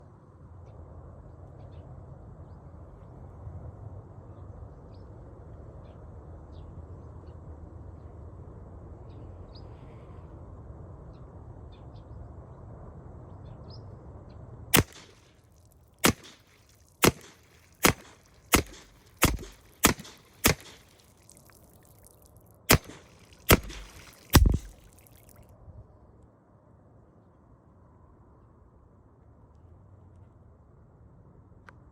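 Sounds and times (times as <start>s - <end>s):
low background noise: 0.0s - 31.9s
air rifle shots: 14.8s - 15.3s, 16.0s - 21.1s, 22.7s - 25.0s.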